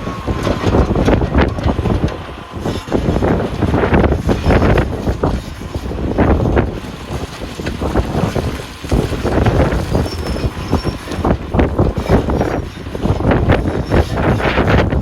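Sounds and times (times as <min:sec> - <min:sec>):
wheel loader engine rumbling: 0:00.0 - 0:15.0
wind gusts on microphone: 0:00.0 - 0:15.0.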